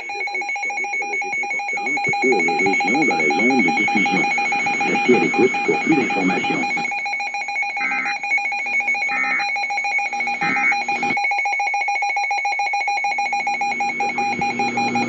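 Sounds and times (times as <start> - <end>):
pulsing high electronic tone: 0.0 - 6.9, 7.8 - 8.2, 10.2 - 11.2.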